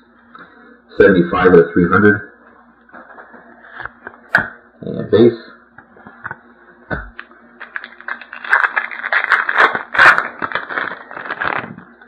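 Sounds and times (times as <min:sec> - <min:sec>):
foil wrapper tearing and crinkling: 0:07.6 - 0:12.0.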